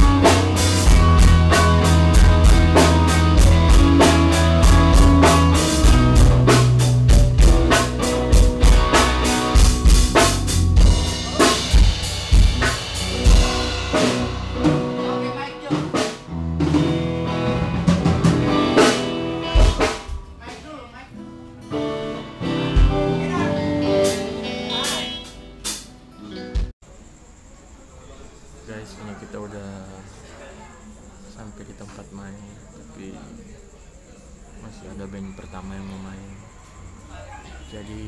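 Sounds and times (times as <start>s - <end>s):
drum kit steady beat: 0.0s - 20.9s, 21.8s - 26.7s
guitar: 0.0s - 26.8s.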